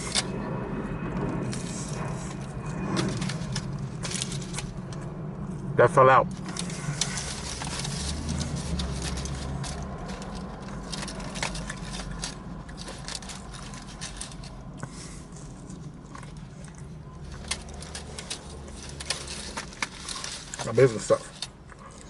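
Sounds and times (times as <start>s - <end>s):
steady low hum: 0.0s - 22.0s
person chewing food: 6.6s - 20.6s.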